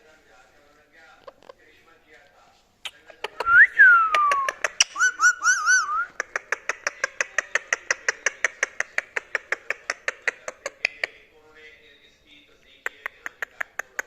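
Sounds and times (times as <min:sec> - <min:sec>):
parakeet whistling: 0:03.5 - 0:06.2.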